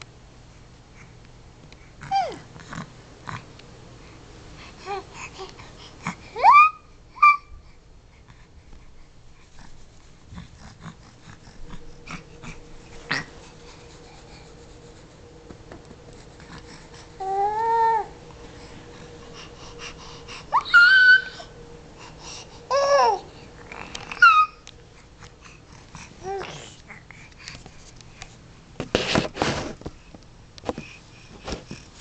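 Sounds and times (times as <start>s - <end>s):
baby babbling and squealing: 6.4s - 7.5s, 20.5s - 21.5s, 22.7s - 23.2s, 24.1s - 24.6s.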